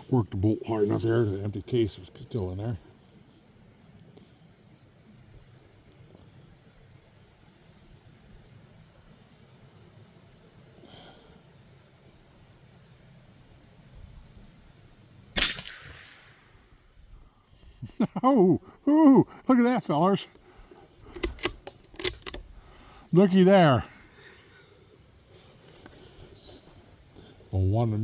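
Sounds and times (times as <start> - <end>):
insects buzzing: 0.0 - 28.0
rifle shot: 15.4 - 16.7.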